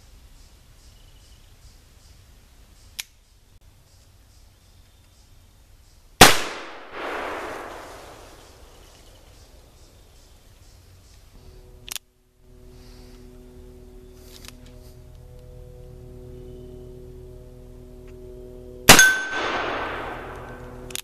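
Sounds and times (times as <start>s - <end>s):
revolver gunshot with echo: 6.2s - 8.6s, 18.9s - 20.6s.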